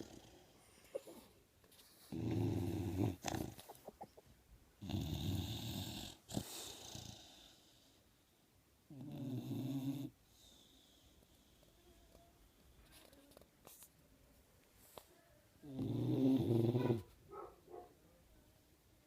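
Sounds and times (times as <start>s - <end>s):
dog snoring: 0.0s - 1.2s, 2.1s - 3.6s, 4.8s - 7.8s, 8.9s - 10.2s, 15.6s - 17.0s.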